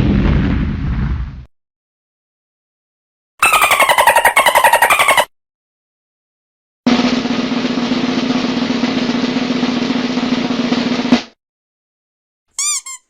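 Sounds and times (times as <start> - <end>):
snare drum roll: 6.9 - 11.4.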